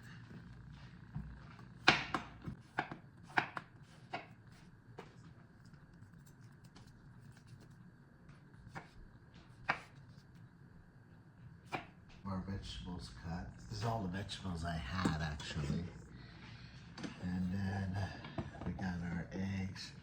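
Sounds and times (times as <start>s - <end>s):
knife chopping on cutting board: 1.8s - 4.3s, 8.7s - 10.0s.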